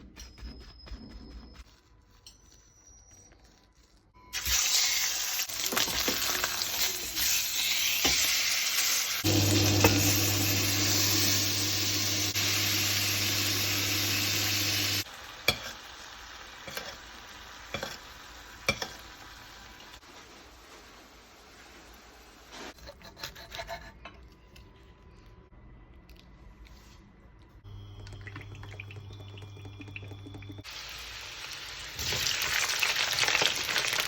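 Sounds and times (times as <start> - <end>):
steak sizzling: 4.4 - 19.7, 30.7 - 34.0.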